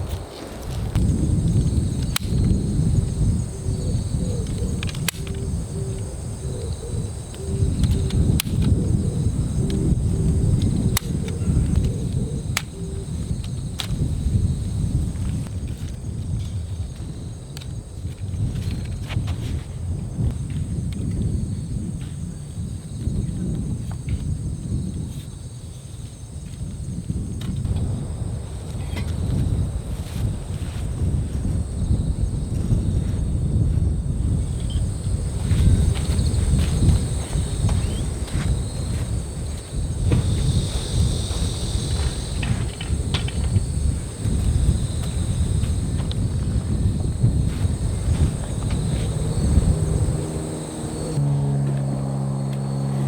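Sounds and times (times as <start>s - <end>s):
insect trill: 0.0s - 53.0s
wind gusting against microphone: 0.0s - 53.0s
light clicks: 2.0s - 2.6s, 4.4s - 5.4s.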